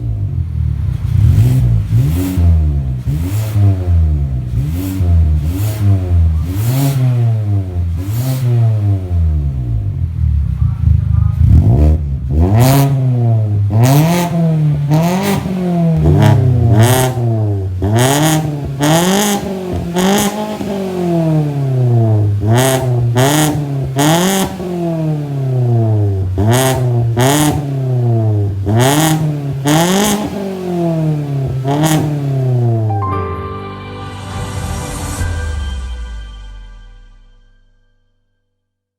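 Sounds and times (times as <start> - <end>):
car engine revving: 0.0 - 32.9
music: 32.9 - 38.9.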